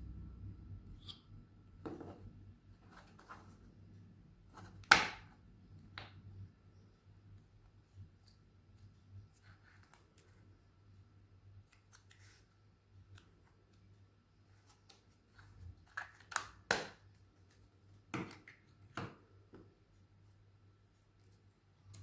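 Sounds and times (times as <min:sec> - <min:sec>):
faint low hum: 0:00.0 - 0:16.3
rustles of objects being handled: 0:02.0 - 0:04.8, 0:05.7 - 0:22.0.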